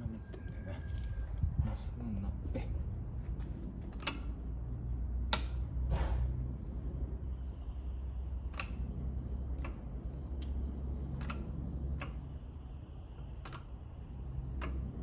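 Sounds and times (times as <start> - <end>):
steady low hum: 0.0 - 15.0
sharp clicks: 8.5 - 8.9.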